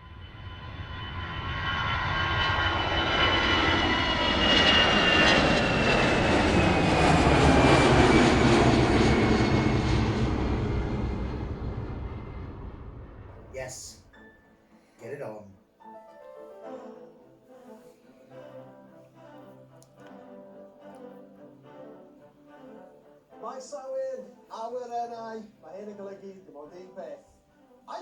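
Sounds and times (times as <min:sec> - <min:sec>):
high engine whine: 0:00.0 - 0:14.0
jet airliner flying past: 0:00.0 - 0:14.2.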